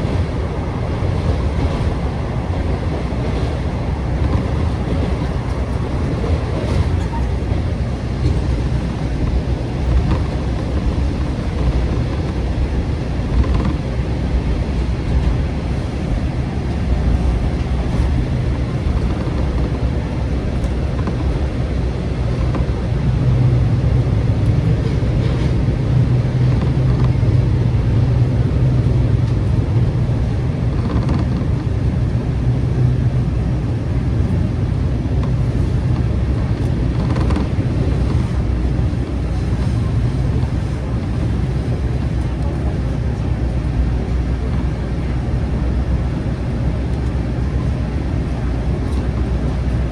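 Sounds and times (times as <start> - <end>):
diesel engine drone: 0.0 - 49.9
train running noise: 0.0 - 49.9.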